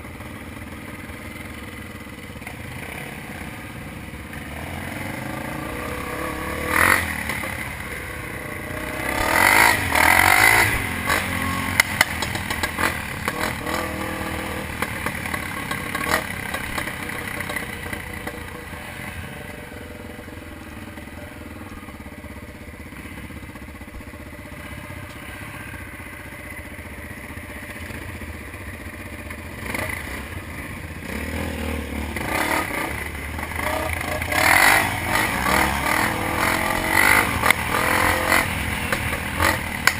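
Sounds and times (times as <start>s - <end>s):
dirt bike engine revving: 2.4s - 22.1s, 29.5s - 39.9s.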